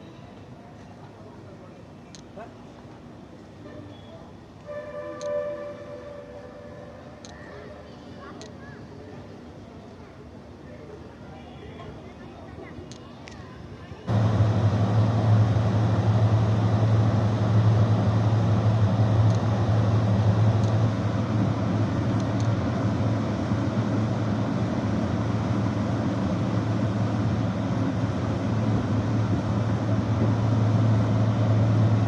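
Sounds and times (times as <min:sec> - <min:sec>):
heat pump humming: 0:14.1 - 0:32.0
rushing noise: 0:14.1 - 0:32.0.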